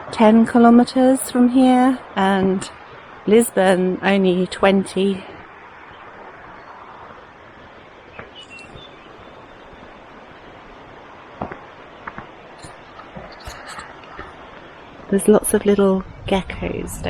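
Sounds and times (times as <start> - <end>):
river rushing: 1.0 - 15.9
bird chirps: 8.0 - 10.5
footsteps on dirt path: 11.4 - 14.7.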